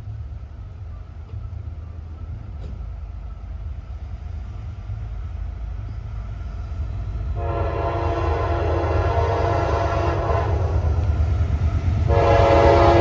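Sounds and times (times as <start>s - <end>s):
diesel locomotive rumble: 0.0s - 13.0s
train air horn: 7.4s - 11.2s, 12.0s - 13.0s.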